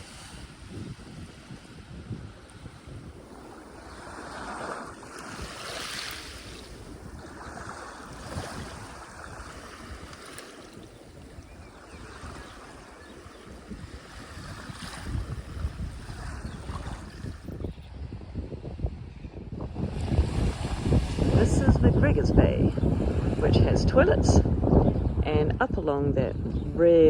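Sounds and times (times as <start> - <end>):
sea waves breaking on beach: 0.0 - 17.8, 19.8 - 22.1
wind rumbling on microphone: 0.0 - 27.0.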